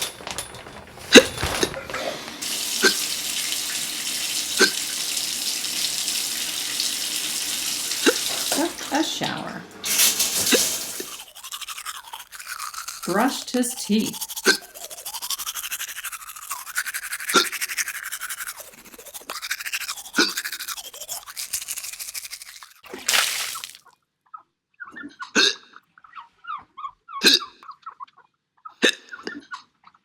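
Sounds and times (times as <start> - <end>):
toothbrush scrubbing teeth: 2.0 - 23.8.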